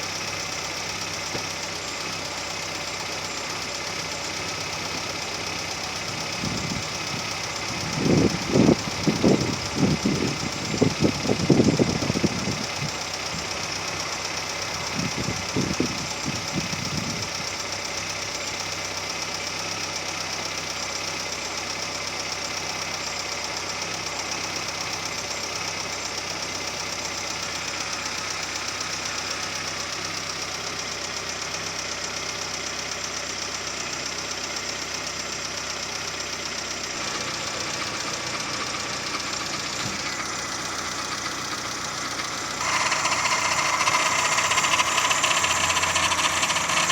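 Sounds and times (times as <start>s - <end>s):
car engine idling: 0.0s - 46.9s.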